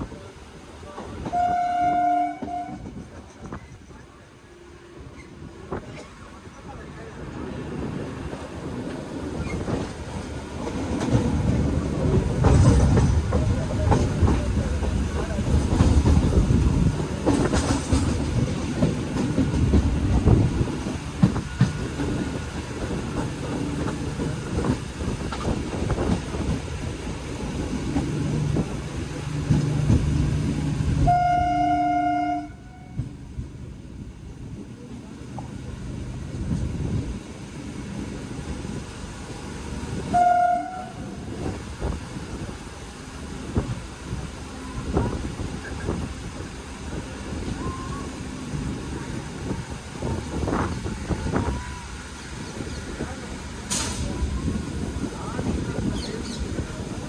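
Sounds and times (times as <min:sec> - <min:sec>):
train horn: 0:01.2 - 0:03.0, 0:31.0 - 0:33.1, 0:40.1 - 0:41.3
train wheels clattering on rails: 0:02.3 - 0:04.1, 0:07.8 - 0:31.2, 0:43.4 - 0:57.0.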